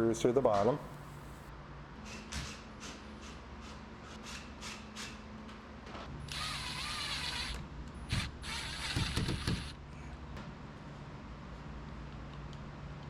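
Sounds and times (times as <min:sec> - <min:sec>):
cordless drill driving screws: 0:06.3 - 0:09.8.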